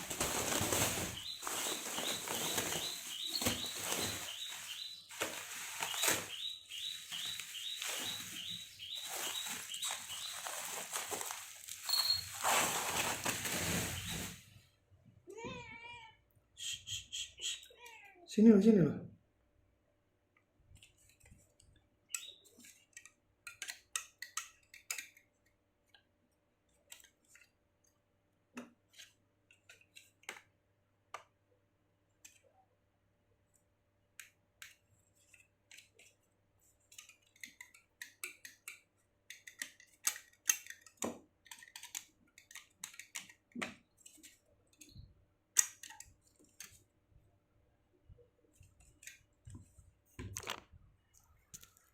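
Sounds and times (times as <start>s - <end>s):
crinkly packaging rustles: 0.0s - 14.6s.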